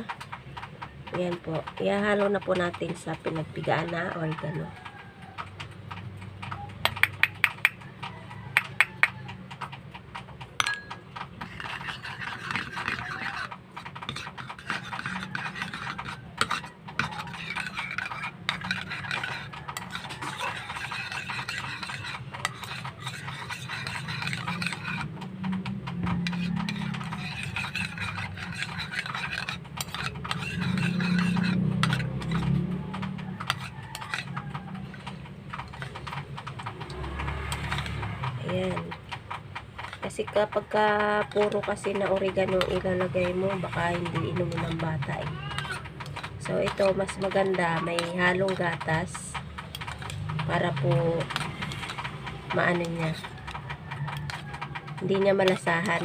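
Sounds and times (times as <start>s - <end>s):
spoon scraping while stirring: 0.0s - 56.0s
spoon clinking against container: 10.6s - 13.5s, 14.1s - 25.1s, 26.7s - 32.5s.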